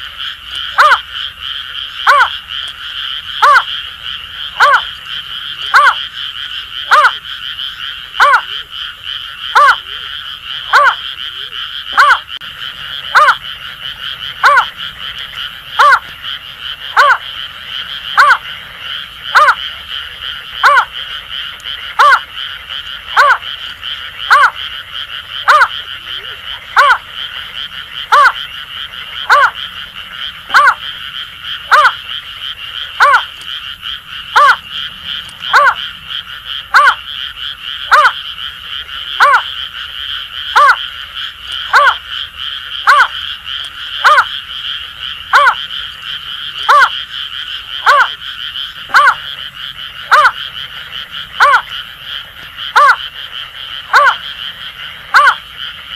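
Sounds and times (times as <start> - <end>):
high frog chorus: 0.0 - 55.9.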